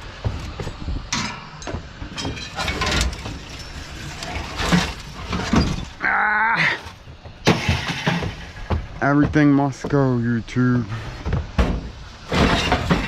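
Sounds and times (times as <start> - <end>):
scrap metal clanking onto a pile: 1.1 - 6.0, 6.8 - 8.8, 11.6 - 13.0.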